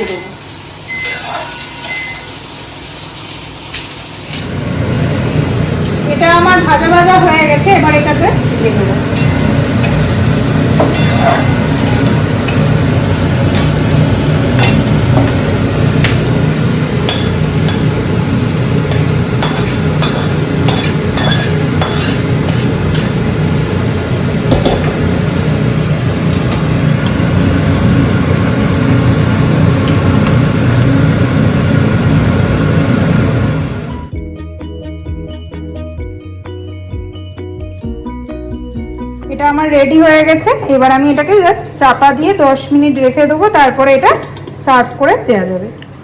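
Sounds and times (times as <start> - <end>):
food sizzling in a pan: 0.0 - 33.9
spoon scraping against pan: 1.0 - 2.0, 10.7 - 13.8, 18.9 - 23.2.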